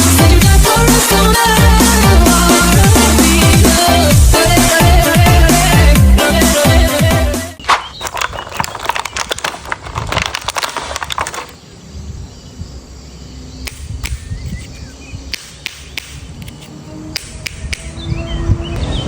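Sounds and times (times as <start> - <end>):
plastic crackling and clicking: 7.6 - 11.6.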